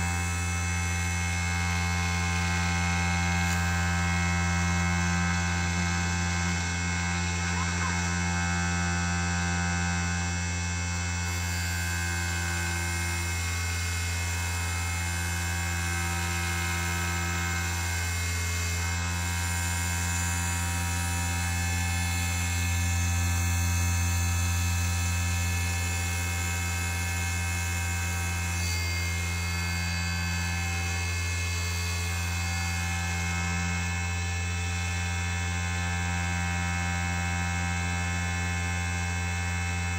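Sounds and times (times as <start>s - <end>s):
lathe motor humming and whining: 0.0s - 39.9s.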